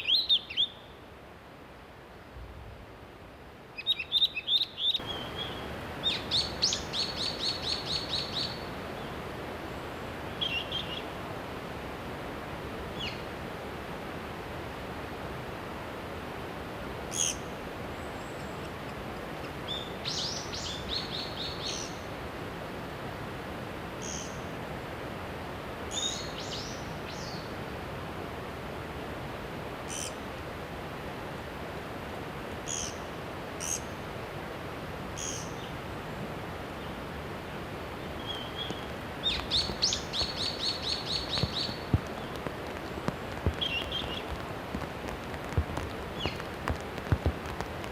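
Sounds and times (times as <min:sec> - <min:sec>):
steady background hiss: 0:00.0 - 0:47.9
woodpecker calls: 0:38.2 - 0:42.4, 0:43.1 - 0:44.4.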